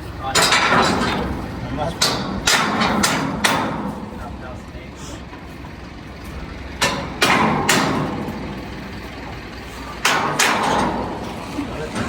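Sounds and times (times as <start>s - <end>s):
low engine rumble: 0.0s - 12.0s
sharp bangs: 0.3s - 4.3s, 6.8s - 8.8s, 10.0s - 12.0s.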